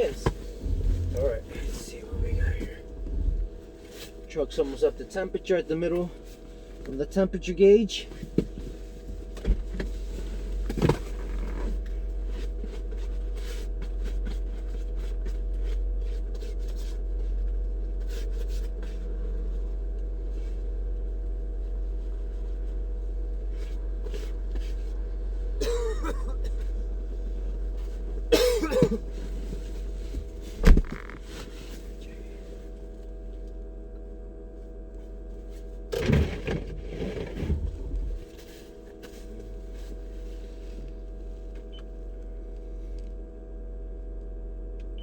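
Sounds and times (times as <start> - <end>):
car engine idling: 0.0 - 8.1, 36.7 - 42.6.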